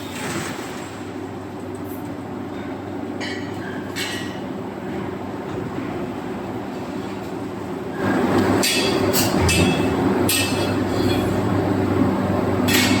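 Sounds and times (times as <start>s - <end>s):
machinery humming: 4.4s - 13.0s.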